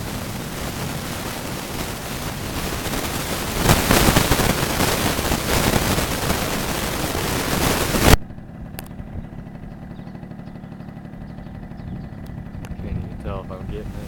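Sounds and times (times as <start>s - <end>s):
loud hissing noise: 0.0s - 8.2s, 13.6s - 14.0s
low steady rumble: 0.0s - 14.0s.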